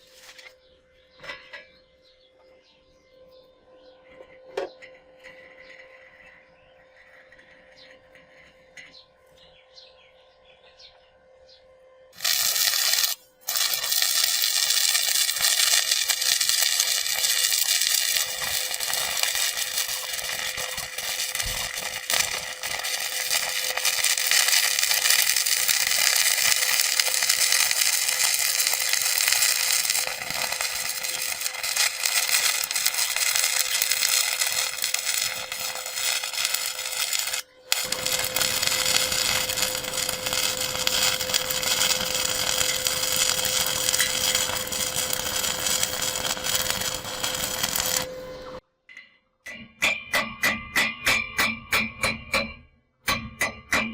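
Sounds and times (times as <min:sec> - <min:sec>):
welding arc sizzling: 0:12.2 - 0:48.6.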